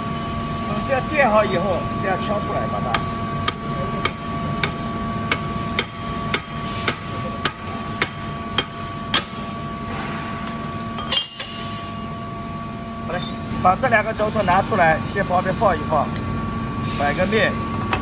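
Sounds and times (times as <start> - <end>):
steady background hum: 0.0 - 18.0
hammer striking metal: 2.9 - 9.4.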